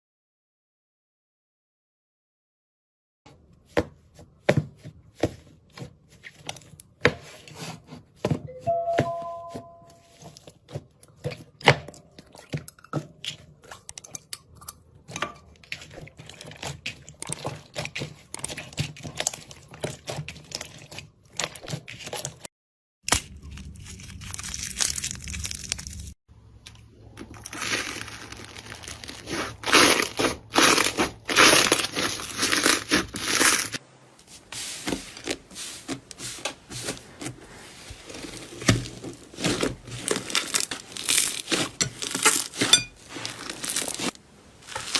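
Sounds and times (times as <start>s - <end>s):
slime crackling and squelching: 15.5s - 22.4s, 23.1s - 26.2s, 27.2s - 33.8s, 34.4s - 44.9s.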